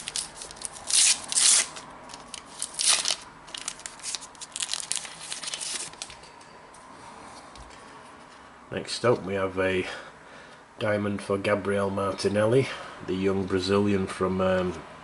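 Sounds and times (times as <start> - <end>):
foil packet ripping: 0.0 - 6.1
wrapper crinkling: 0.0 - 6.2.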